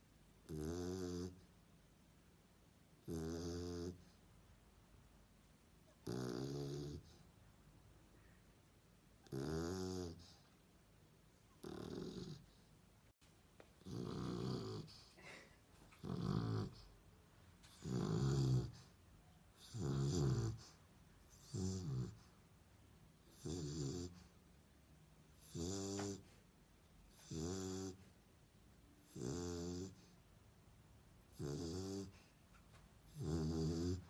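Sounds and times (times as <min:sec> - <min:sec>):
dog snoring: 0:00.4 - 0:01.5, 0:03.0 - 0:04.2, 0:05.9 - 0:07.3, 0:09.2 - 0:10.5, 0:11.5 - 0:12.6, 0:13.8 - 0:15.1, 0:15.9 - 0:17.0, 0:17.6 - 0:22.4, 0:23.2 - 0:24.4, 0:25.3 - 0:26.4, 0:27.1 - 0:28.1, 0:29.0 - 0:30.2, 0:31.3 - 0:32.3, 0:33.1 - 0:34.0.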